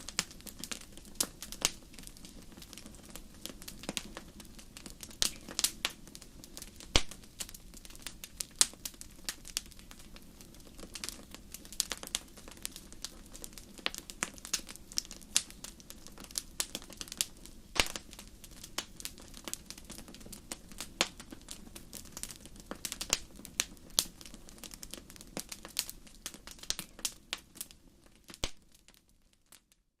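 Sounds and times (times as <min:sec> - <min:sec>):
wood fire crackling: 0:00.0 - 0:29.9
soft low background noise: 0:00.0 - 0:30.0.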